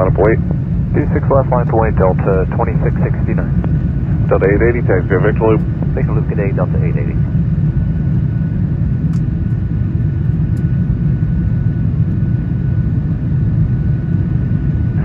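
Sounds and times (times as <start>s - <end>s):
faint high whine: 0.0s - 8.6s
jet engines deep rumble: 0.0s - 15.0s.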